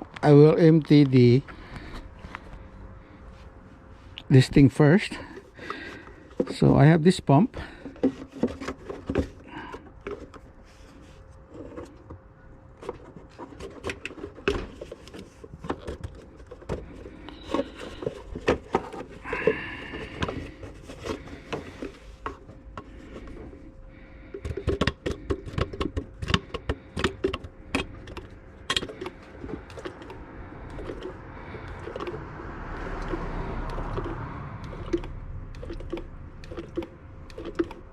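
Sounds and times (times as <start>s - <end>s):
hand suction pump clicks and knocks: 24.3s - 32.2s, 33.0s - 37.9s.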